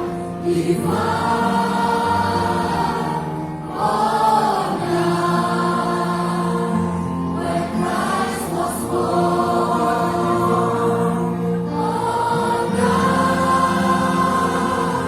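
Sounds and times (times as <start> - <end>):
children's choir singing: 0.0 - 15.0.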